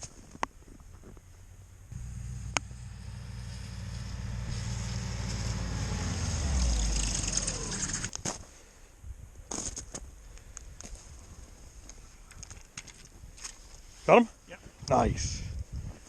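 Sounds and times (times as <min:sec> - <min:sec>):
motor running: 0:01.9 - 0:08.1.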